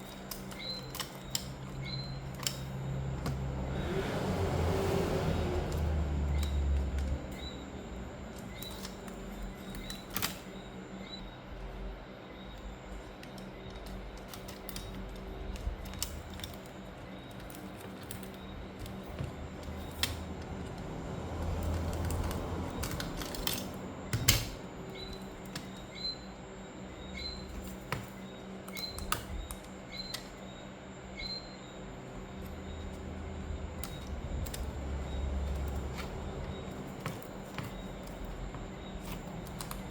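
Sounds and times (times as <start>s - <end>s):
small clicks of laptop parts: 0.0s - 3.4s, 5.7s - 7.5s, 8.3s - 10.5s, 12.6s - 25.9s, 33.8s - 39.9s
low steady hum: 0.0s - 39.9s.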